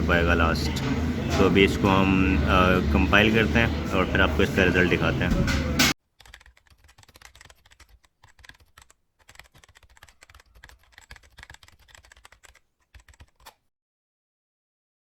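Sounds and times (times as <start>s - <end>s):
rapid irregular clicking and tapping: 5.3s - 13.6s.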